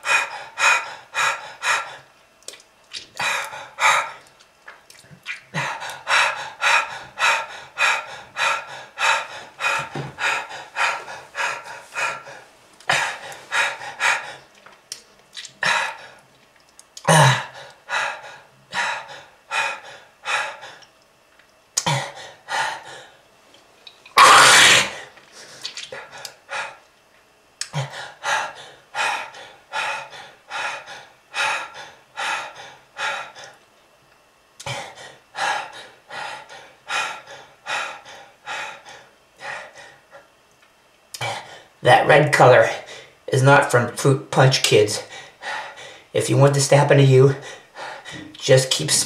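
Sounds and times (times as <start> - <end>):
person coughing: 17.0 - 17.5, 24.2 - 25.0.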